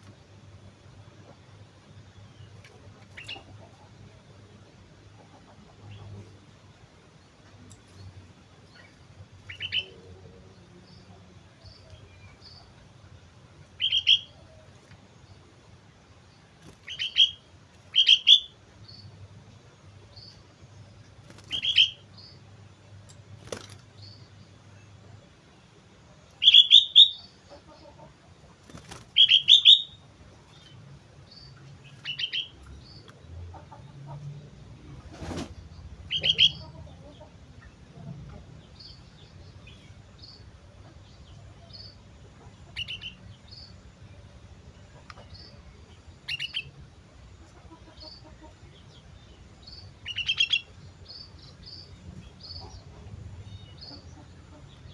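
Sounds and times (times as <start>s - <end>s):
bird chirping: 7.3s - 13.2s, 13.8s - 15.4s, 16.3s - 25.4s, 26.2s - 28.1s, 28.7s - 54.9s.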